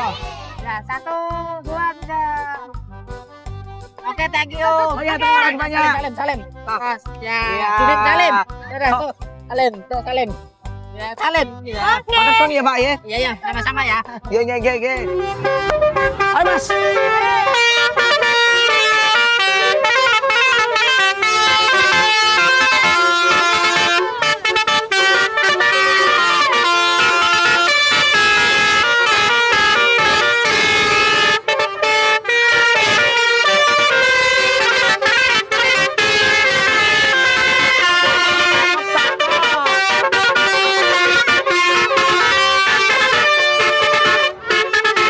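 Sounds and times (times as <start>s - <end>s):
multi-tone horn playing melody: 4.6s - 6.1s, 14.8s - 45.0s.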